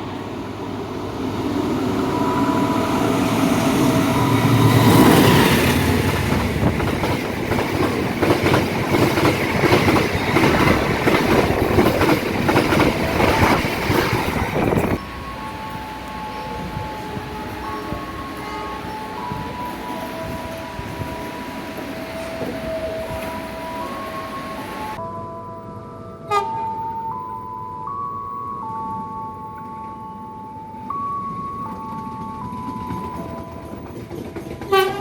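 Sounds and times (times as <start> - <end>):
train rumbling past: 0.0 - 25.0, 30.6 - 35.0
wheels clickety-clack on rail joints: 3.9 - 25.0, 31.6 - 35.0.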